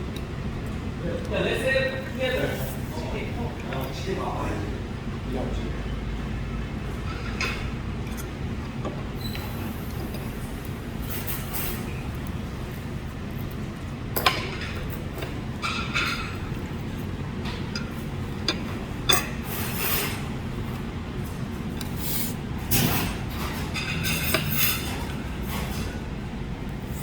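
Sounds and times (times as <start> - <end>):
restaurant room hum: 0.0 - 27.0
dishes and cutlery clinking: 14.2 - 16.7, 17.4 - 20.3, 21.8 - 26.0.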